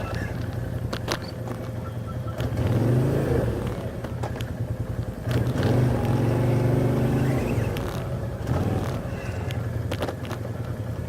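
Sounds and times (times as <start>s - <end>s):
quad bike engine revving: 1.2s - 4.3s, 5.1s - 9.8s.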